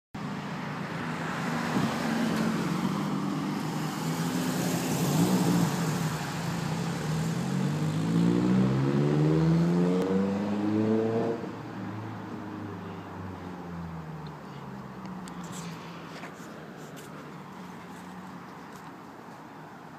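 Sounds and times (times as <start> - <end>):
car engine revving: 3.9 - 11.4.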